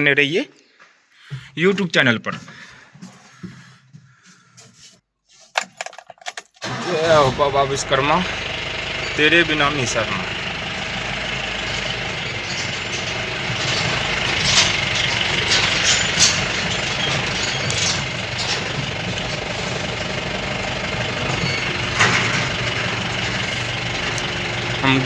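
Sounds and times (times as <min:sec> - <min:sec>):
sharp knocks and rattles: 0:05.5 - 0:06.6, 0:12.4 - 0:19.9, 0:21.1 - 0:24.4
road noise: 0:05.6 - 0:25.0
truck engine running: 0:05.6 - 0:25.0.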